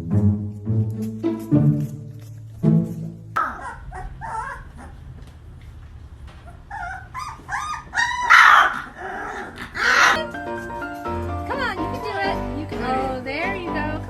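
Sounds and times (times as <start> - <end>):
puppy barking: 3.4 - 5.1, 6.5 - 11.5
puppy whimpering and yipping: 3.4 - 5.1, 6.4 - 11.4.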